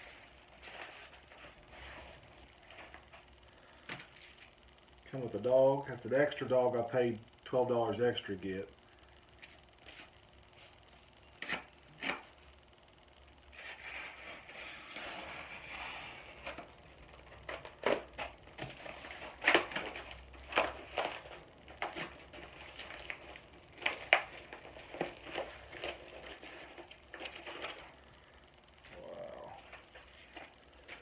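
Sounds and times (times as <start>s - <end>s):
packing material rustling: 13.5s - 29.0s
packing material crinkling: 13.5s - 31.0s.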